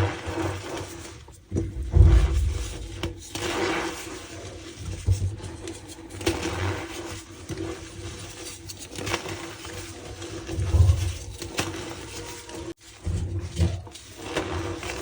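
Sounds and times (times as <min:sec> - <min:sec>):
dull thuds: 0:01.5 - 0:03.3.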